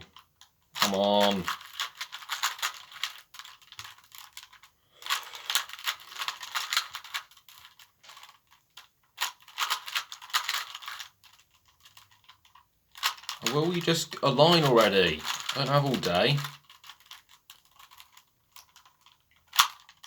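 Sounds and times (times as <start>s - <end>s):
puzzle cube plastic clicks: 0.1s - 20.0s.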